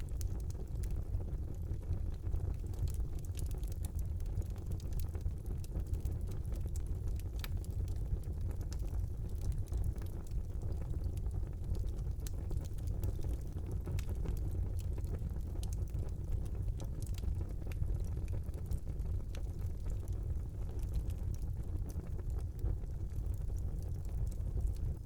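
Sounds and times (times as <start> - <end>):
fire crackling and popping: 0.0 - 25.0
low rumble of flames: 0.0 - 25.0.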